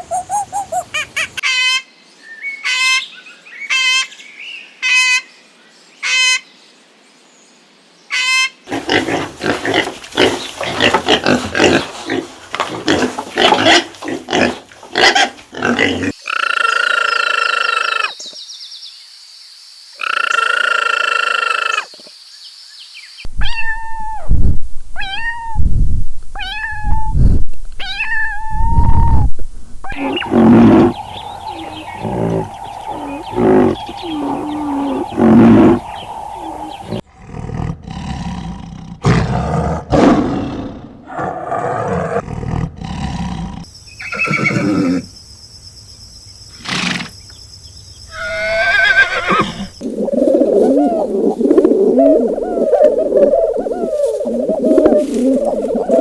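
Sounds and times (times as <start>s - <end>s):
pitched animal calls: 8.1s - 18.2s, 29.9s - 37.0s, 48.1s - 56.0s
low rough animal calls: 29.9s - 37.0s, 48.1s - 56.0s.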